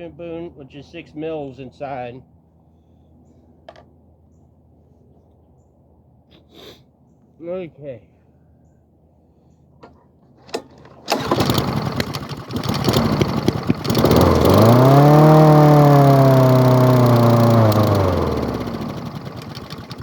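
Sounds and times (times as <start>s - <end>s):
lawn mower engine racing: 10.5s - 20.0s.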